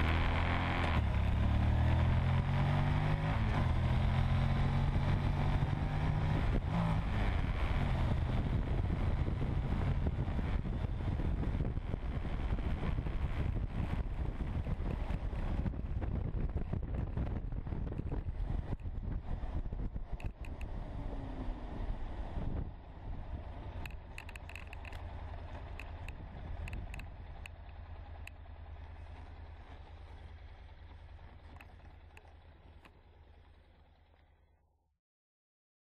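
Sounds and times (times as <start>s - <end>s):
motorcycle engine running: 0.0s - 34.7s
wind rushing over microphone: 4.7s - 24.2s.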